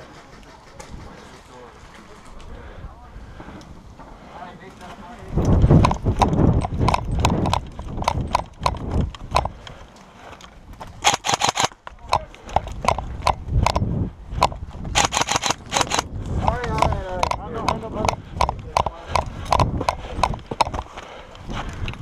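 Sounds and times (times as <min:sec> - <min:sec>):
footsteps on rough ground: 0:03.3 - 0:22.0
sharp clicks: 0:05.4 - 0:22.0.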